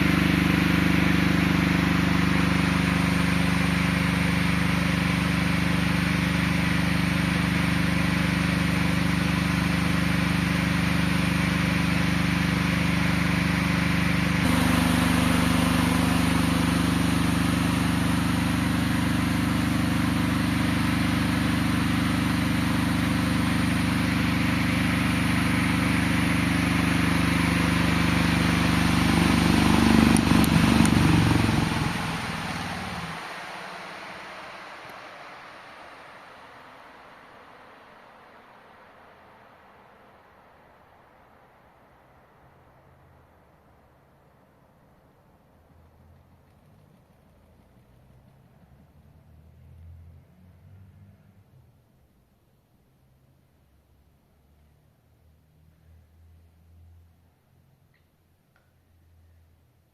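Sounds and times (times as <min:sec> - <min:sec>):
electric fan motor hum: 0:00.0 - 0:41.6
fan air rushing: 0:00.0 - 0:49.0.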